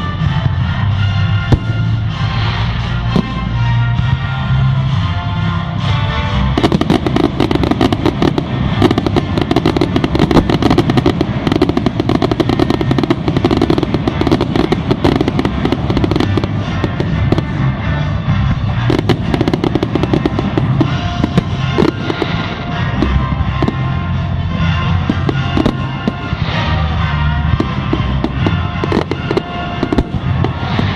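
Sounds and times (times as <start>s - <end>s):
fireworks crackling and banging: 0.0s - 30.9s
music playing: 0.0s - 30.9s.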